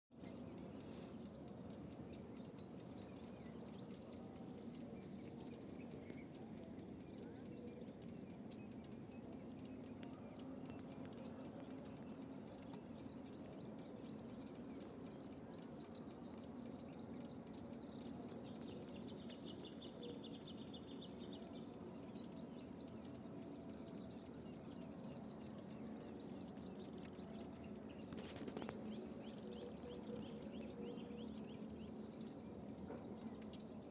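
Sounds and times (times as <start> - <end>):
small birds chirping: 0.0 - 33.9
low background hiss: 0.2 - 28.1, 28.7 - 33.9.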